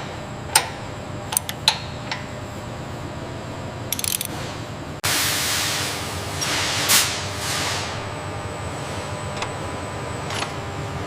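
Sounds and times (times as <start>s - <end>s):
steady low hum: 0.0s - 11.0s
ratcheting clicks: 3.9s - 4.3s.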